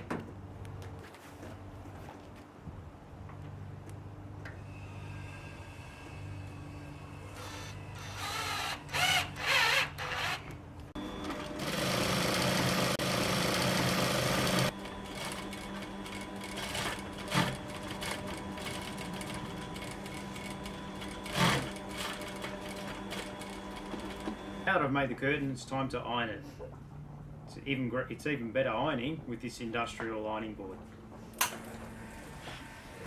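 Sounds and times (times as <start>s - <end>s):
sewing machine stitching: 7.4s - 24.7s.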